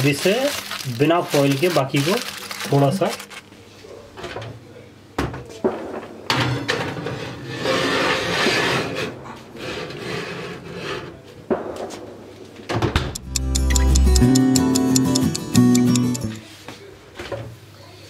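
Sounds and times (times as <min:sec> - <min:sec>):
rubbing and scraping in kitchen: 0:00.0 - 0:03.5, 0:06.7 - 0:11.3
acoustic guitar music: 0:13.2 - 0:16.4.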